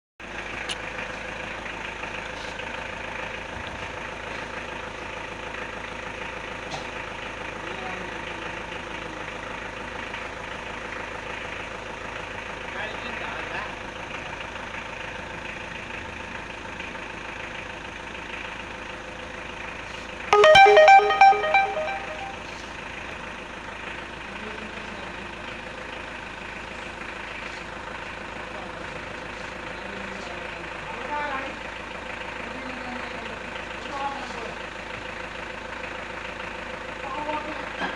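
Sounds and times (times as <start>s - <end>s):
electronic melody notes: 20.4s - 22.5s.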